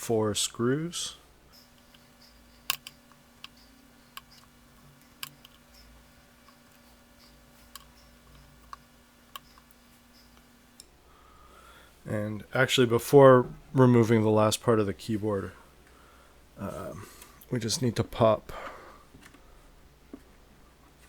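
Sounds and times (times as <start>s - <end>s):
faint steady hum: 0.0s - 21.0s
screwdriver clicking on metal screws: 1.5s - 10.4s.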